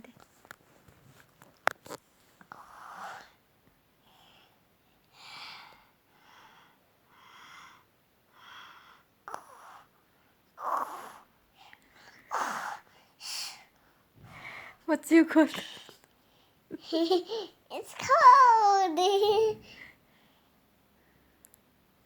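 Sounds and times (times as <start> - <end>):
child pretend snoring: 10.6 - 11.3.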